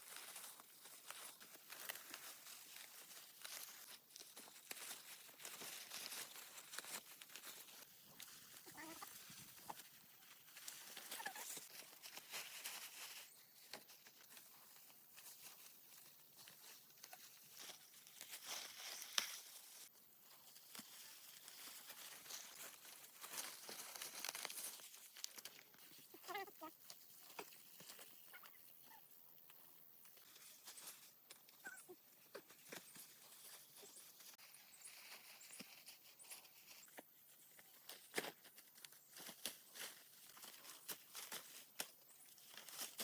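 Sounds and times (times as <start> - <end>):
rustles and clicks: 0.0 - 43.0
short animal calls: 8.6 - 9.2, 26.1 - 26.8, 31.6 - 32.4.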